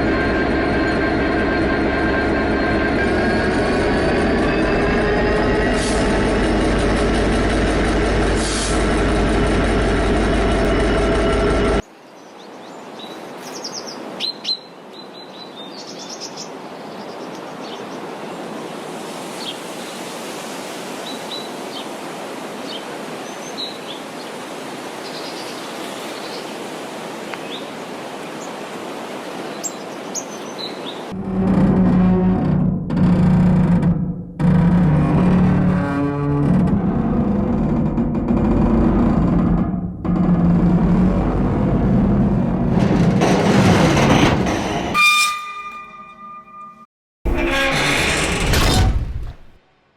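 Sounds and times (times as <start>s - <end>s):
train running: 0.0s - 11.8s, 41.1s - 46.4s
steady outdoor hiss: 11.8s - 31.1s.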